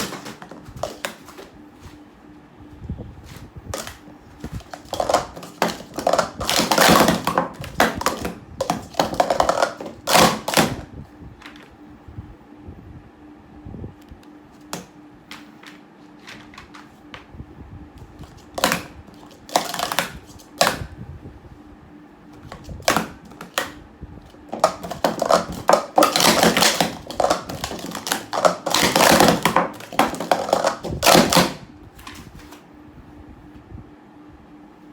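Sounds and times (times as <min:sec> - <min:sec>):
plastic cups clacking: 0:00.0 - 0:01.5, 0:03.3 - 0:11.7, 0:14.7 - 0:16.9, 0:18.2 - 0:20.9, 0:22.4 - 0:32.6.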